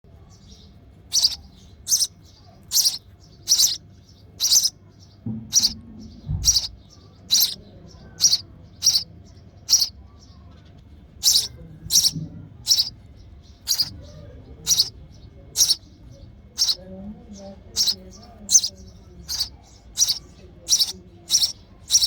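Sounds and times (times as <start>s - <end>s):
sparrow chick chirping: 0.2s - 10.4s, 11.2s - 22.0s
low thumps: 5.3s - 6.7s.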